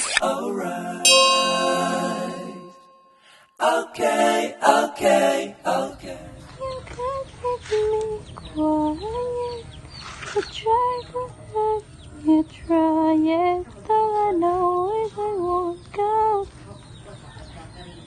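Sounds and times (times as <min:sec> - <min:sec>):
bell-like chime ringing: 0:01.0 - 0:03.4.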